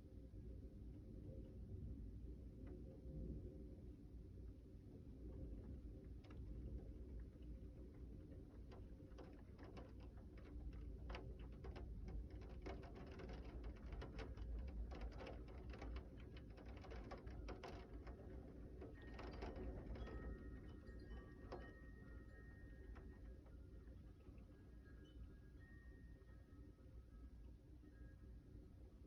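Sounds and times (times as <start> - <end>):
faint low rumble: 0.0 - 29.0
rain dripping ticks: 6.2 - 20.2
faint high steady tone: 20.0 - 29.0.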